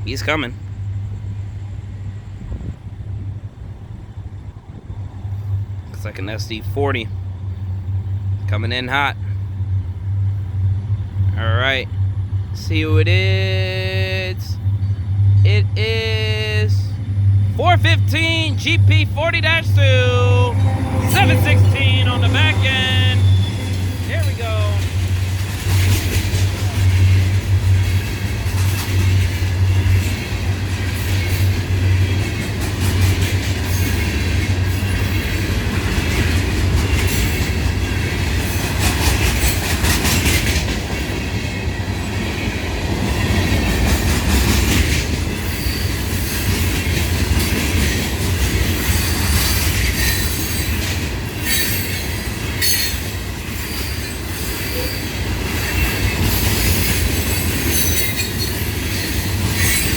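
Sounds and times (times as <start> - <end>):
low diesel drone: 0.0 - 26.6
freight train rolling past: 0.0 - 59.9
wheel squeal: 23.2 - 24.1, 48.8 - 53.0, 53.6 - 59.9
clacking over rail joints: 23.4 - 54.6.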